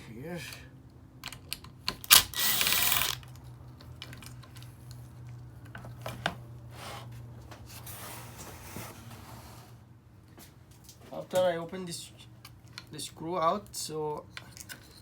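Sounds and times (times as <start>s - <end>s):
rough rattling of hand tool: 2.1s - 3.4s.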